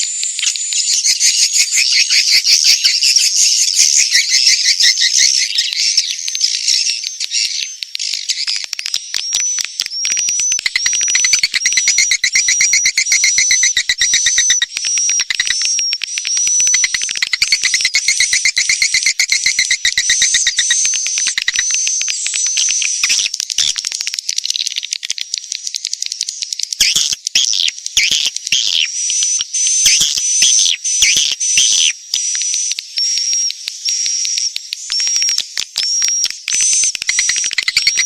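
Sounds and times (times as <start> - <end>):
swiftlets twittering: 7.8 - 24.6, 25.4 - 38.0.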